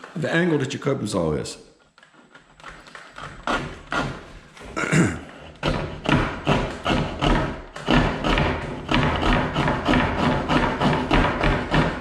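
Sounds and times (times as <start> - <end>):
hand saw cutting wood: 2.2 - 4.8, 5.4 - 12.0.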